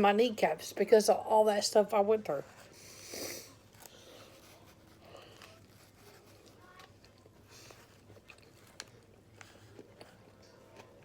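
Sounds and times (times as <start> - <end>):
faint chewing: 2.4 - 11.0.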